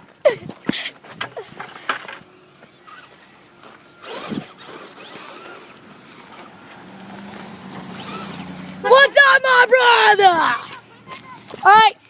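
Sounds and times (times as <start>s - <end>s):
electric motor whirring: 2.6s - 8.7s.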